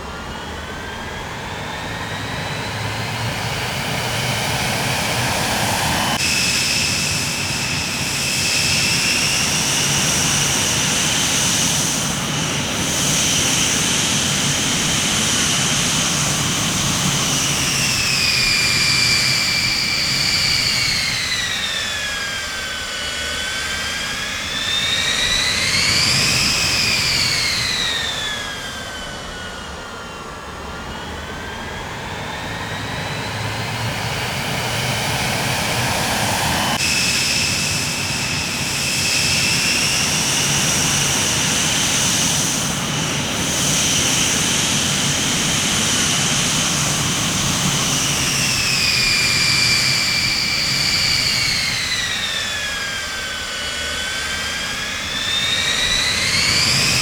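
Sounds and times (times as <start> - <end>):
jet engines with turbine whine: 0.0 - 57.0.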